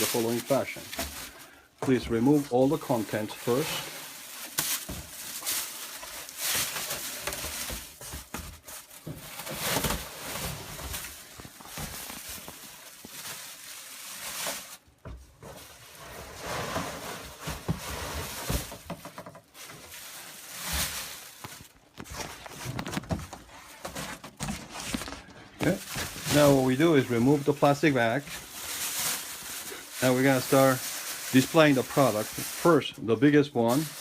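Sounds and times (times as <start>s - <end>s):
plastic rustling and crinkling: 0.0s - 34.0s.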